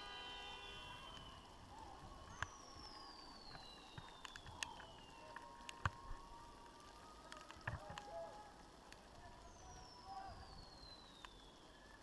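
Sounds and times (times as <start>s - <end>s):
falling firework whistle: 0.0s - 1.5s
distant fireworks popping: 0.5s - 11.5s.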